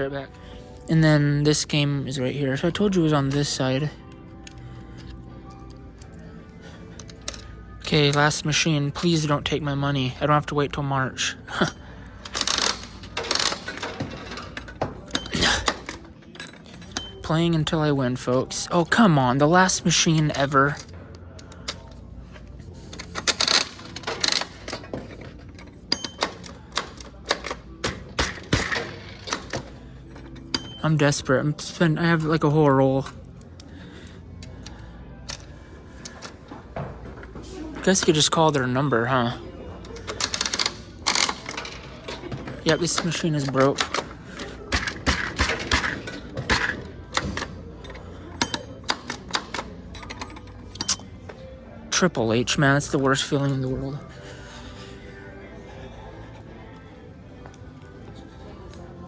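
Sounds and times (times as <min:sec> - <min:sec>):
vending machine metallic clicks: 0:22.9 - 0:31.0, 0:39.9 - 0:51.1.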